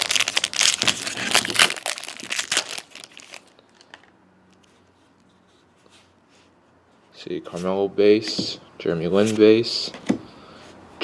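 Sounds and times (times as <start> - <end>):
plastic wrapper crinkling: 0.0 - 4.1.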